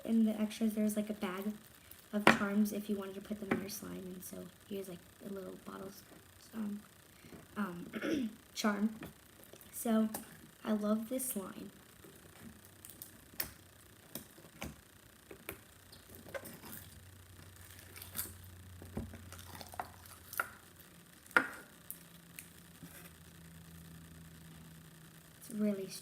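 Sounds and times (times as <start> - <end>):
small pops and crackles: 12.0 - 23.2.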